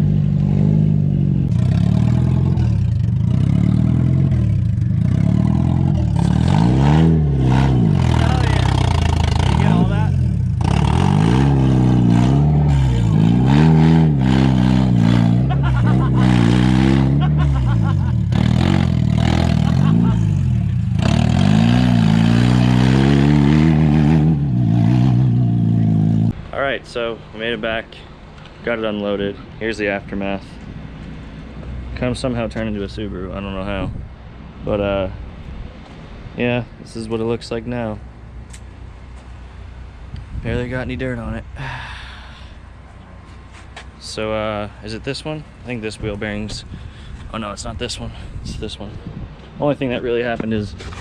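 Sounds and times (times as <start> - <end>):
car engine revving: 0.0 - 26.4.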